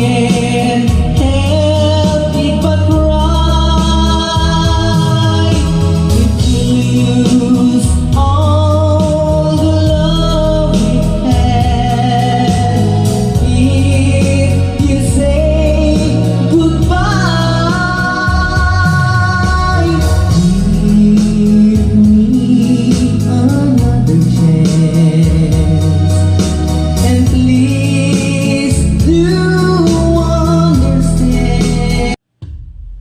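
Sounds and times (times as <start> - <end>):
full bass line: 0.0 - 33.0.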